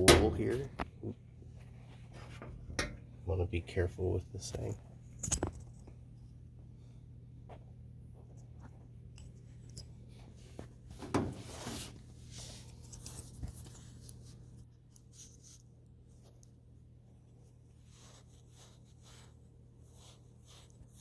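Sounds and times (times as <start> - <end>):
steady low hum: 0.0 - 21.0
steel wool scratching: 17.8 - 21.0.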